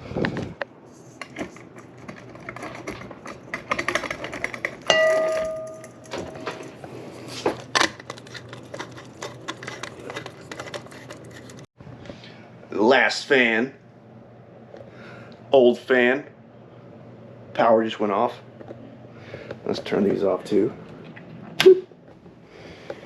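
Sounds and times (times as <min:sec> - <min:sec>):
small hard parts clicking: 0:01.5 - 0:04.9
ringing clink: 0:04.9 - 0:06.2.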